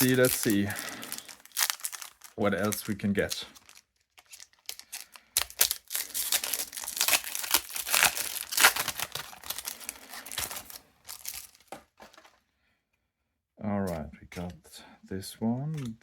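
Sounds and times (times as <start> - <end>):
foil wrapper crinkling and tearing: 0.0 - 11.7.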